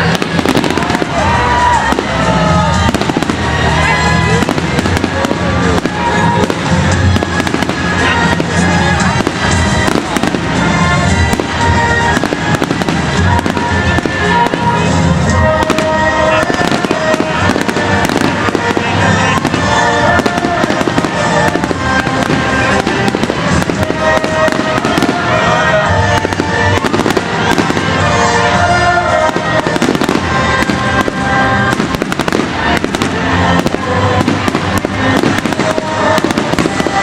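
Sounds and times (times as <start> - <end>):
fireworks bangs and crackles: 0.0 - 37.0
loud music soundtrack: 0.0 - 37.0.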